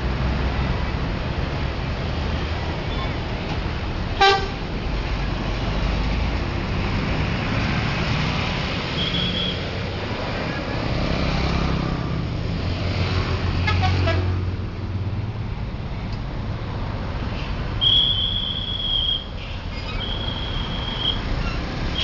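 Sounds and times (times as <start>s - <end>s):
heavy vehicle passing: 0.0s - 9.0s, 9.6s - 17.8s
road traffic rumble and tyre noise: 0.0s - 22.0s
multi-tone bus horn toots: 4.2s - 4.6s, 9.0s - 9.6s, 13.6s - 14.4s.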